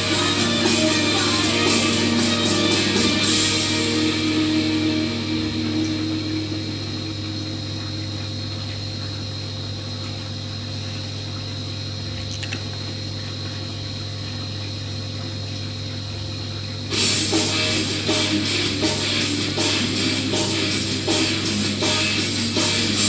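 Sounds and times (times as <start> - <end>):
guitar music: 0.0 - 8.0, 16.9 - 23.0
aquarium pump humming: 0.0 - 23.0
water running through filter: 0.0 - 23.0.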